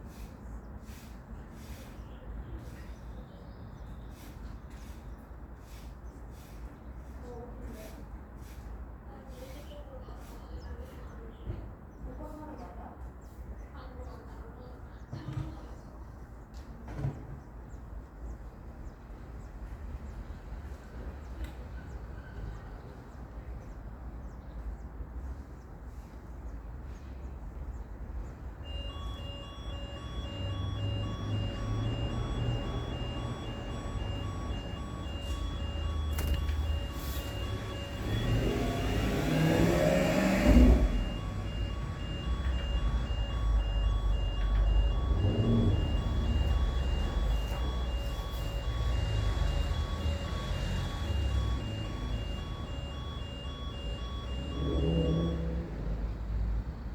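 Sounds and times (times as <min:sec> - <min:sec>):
small birds chirping: 0:00.1 - 0:39.3
short repeated beeps: 0:28.6 - 0:55.5
low outdoor rumble: 0:28.9 - 0:39.3, 0:40.0 - 0:56.9.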